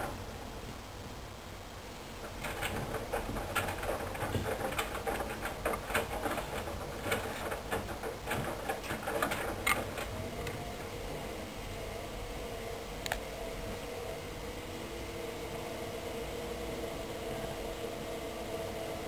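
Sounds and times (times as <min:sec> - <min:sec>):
wet laundry tumbling: 0:02.2 - 0:10.3
washing machine drum turning: 0:02.2 - 0:10.6.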